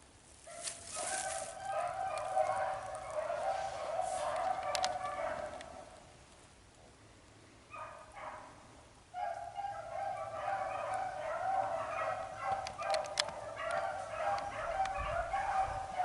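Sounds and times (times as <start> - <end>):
hounds baying: 0.5 - 6.0, 7.7 - 8.6, 9.2 - 16.0
sharp clicks: 12.5 - 15.0.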